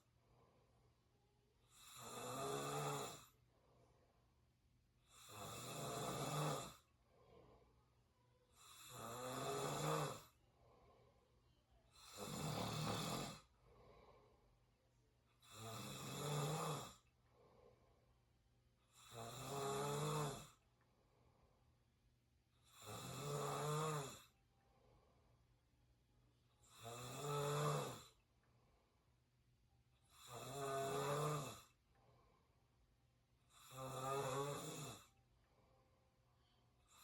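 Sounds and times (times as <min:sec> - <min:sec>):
quiet breathing: 0:00.0 - 0:37.0
person snoring: 0:01.7 - 0:03.4, 0:05.1 - 0:06.8, 0:08.6 - 0:10.4, 0:12.0 - 0:13.5, 0:15.4 - 0:17.1, 0:18.9 - 0:20.6, 0:22.7 - 0:24.3, 0:26.7 - 0:28.2, 0:30.1 - 0:31.7, 0:33.5 - 0:35.1.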